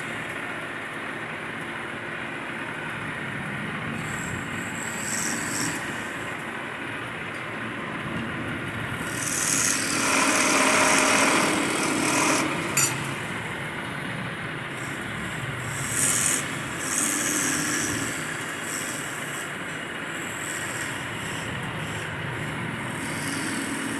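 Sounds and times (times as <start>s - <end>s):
steady machine noise: 2.0s - 23.9s
tool scraping wood: 4.0s - 6.4s, 9.0s - 13.7s, 14.7s - 23.9s.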